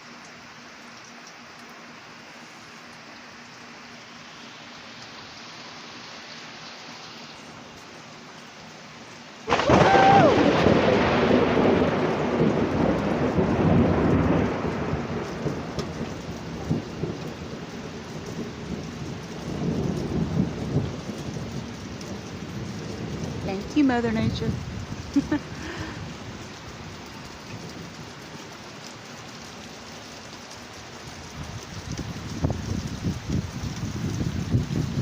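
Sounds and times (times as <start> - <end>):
steady rain: 0.0 - 35.0
thunder clap rumbling: 9.5 - 26.1.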